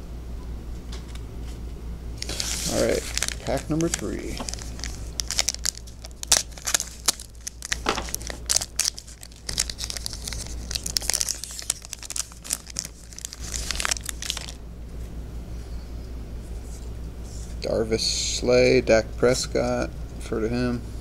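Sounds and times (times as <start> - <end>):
wrapper crackling: 2.2 - 14.6.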